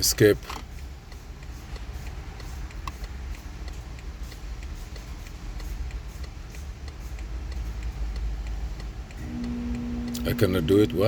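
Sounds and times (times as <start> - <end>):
faint rapid ticking: 0.0 - 11.0
steady low rumble: 8.7 - 11.0.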